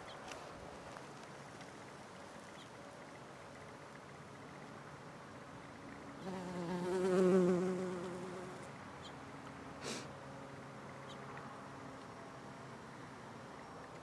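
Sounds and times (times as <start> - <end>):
bumblebee buzzing in flight: 6.2 - 8.7.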